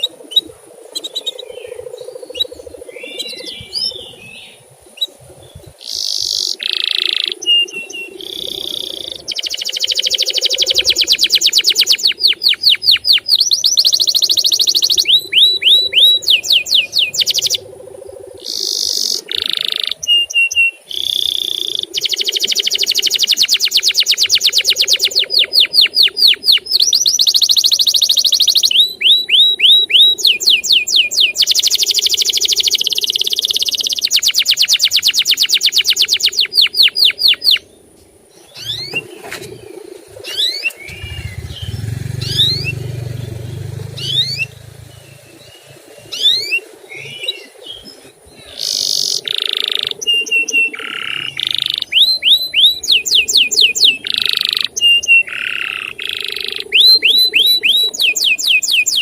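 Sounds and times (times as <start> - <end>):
canary trilling: 5.8 - 17.6, 40.3 - 45.2, 48.4 - 59.0.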